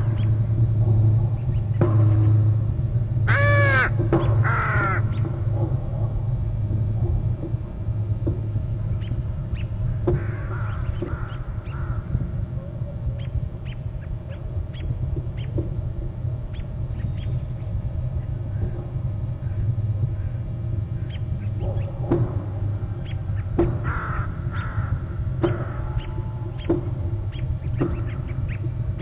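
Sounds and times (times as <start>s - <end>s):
wild birds calling: 0.0s - 2.5s, 3.2s - 5.8s, 8.8s - 29.0s
steady low hum: 0.0s - 29.0s
birds chattering calls: 8.9s - 12.2s, 16.5s - 21.9s, 22.7s - 29.0s.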